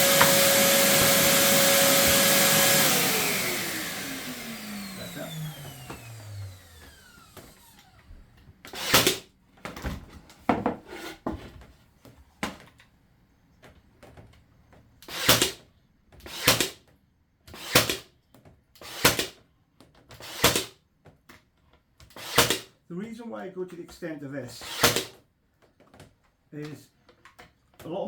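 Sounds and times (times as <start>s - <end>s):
nail gun firing into wood: 8.7s - 9.3s, 15.0s - 15.6s, 16.2s - 16.9s, 17.5s - 18.1s, 18.8s - 19.4s, 20.1s - 20.8s, 22.1s - 22.8s, 24.6s - 25.2s.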